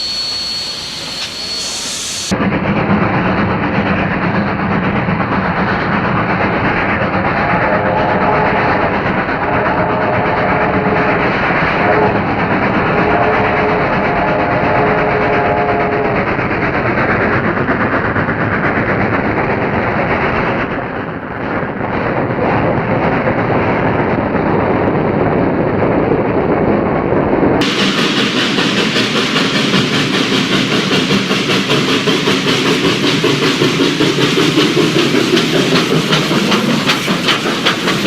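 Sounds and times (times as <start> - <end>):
train horn blasts: 0.0 - 2.3, 7.2 - 16.7
train running: 0.0 - 38.0.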